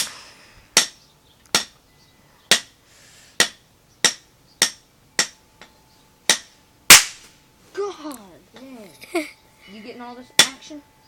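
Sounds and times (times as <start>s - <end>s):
toy caps popping: 6.9s - 7.2s.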